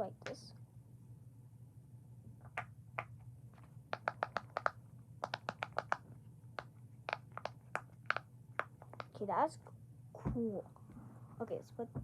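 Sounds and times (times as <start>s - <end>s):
pop-it toy popping: 3.9s - 6.0s, 6.6s - 9.1s.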